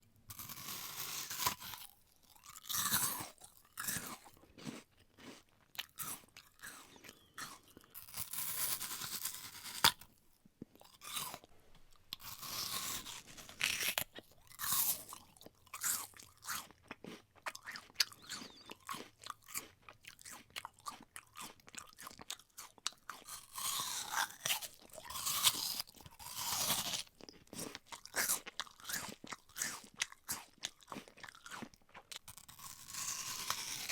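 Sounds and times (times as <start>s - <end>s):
apple crunching bites: 0.3s - 10.1s, 10.7s - 33.9s
wet chewing and smacking: 1.0s - 12.3s, 13.0s - 33.9s.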